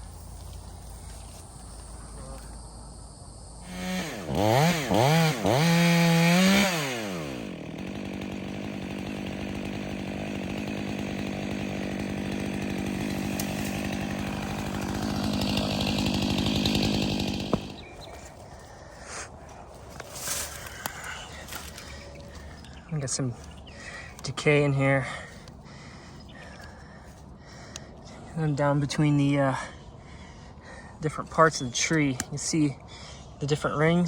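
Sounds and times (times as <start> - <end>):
chainsaw cutting stump: 3.6 - 24.6.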